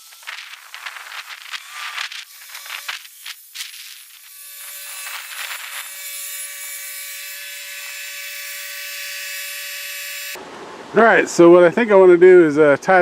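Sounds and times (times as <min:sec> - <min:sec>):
tractor engine whining: 0:00.0 - 0:10.4.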